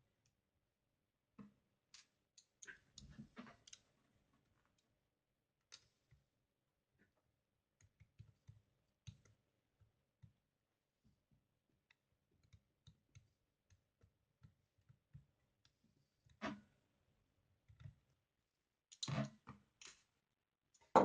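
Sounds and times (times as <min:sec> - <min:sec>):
small clicks of hand tools: 0:01.9 - 0:03.9, 0:05.7 - 0:06.0, 0:18.9 - 0:20.1.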